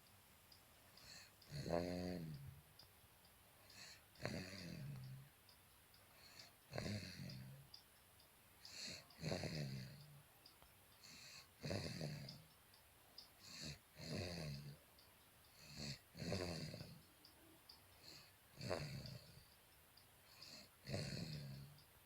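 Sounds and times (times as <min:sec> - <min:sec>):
person snoring: 0:01.0 - 0:02.6, 0:03.7 - 0:05.3, 0:06.2 - 0:07.6, 0:08.7 - 0:10.1, 0:11.0 - 0:12.4, 0:13.4 - 0:14.8, 0:15.6 - 0:17.0, 0:18.0 - 0:19.4, 0:20.3 - 0:21.8.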